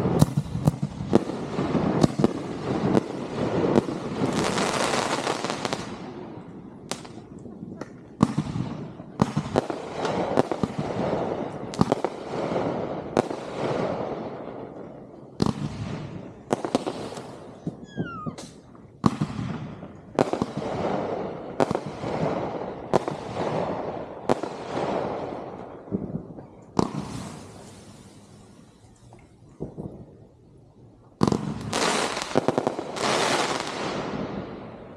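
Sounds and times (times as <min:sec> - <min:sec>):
fireworks bursting: 0:00.0 - 0:29.0, 0:31.1 - 0:34.9
crackling firework tails: 0:00.0 - 0:34.9
falling firework whistle: 0:17.7 - 0:18.7.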